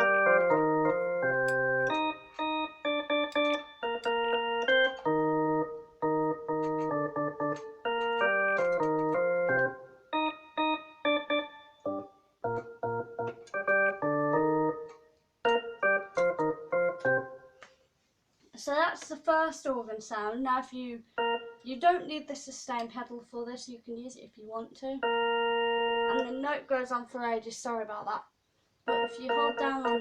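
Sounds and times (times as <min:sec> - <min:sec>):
electronic organ melody: 0:00.0 - 0:17.6, 0:21.2 - 0:21.8, 0:25.0 - 0:26.5, 0:28.9 - 0:30.0.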